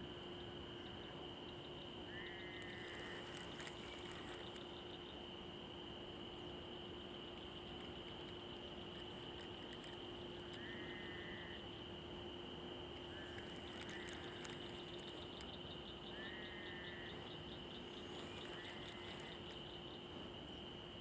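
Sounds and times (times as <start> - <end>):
faint low hum: 0.0 - 21.0
high-pitched insect trill: 0.0 - 21.0
rapid ticks: 2.5 - 5.0, 7.6 - 10.7, 13.2 - 15.8, 18.2 - 19.8.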